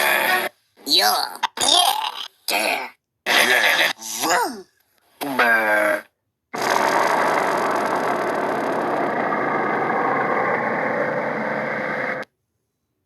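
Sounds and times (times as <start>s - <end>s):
noisy engine-like rumbling: 6.6s - 12.3s.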